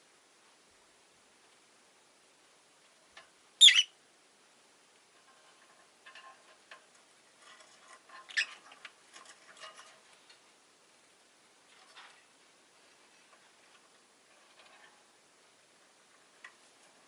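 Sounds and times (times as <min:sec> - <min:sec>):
lovebird shrill call: 0:03.6 - 0:04.0
soft bird chirps: 0:03.6 - 0:04.0.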